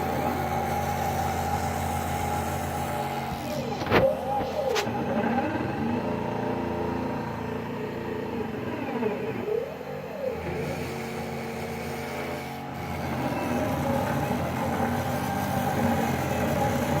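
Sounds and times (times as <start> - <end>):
stepper motors whining: 0.0 - 17.0.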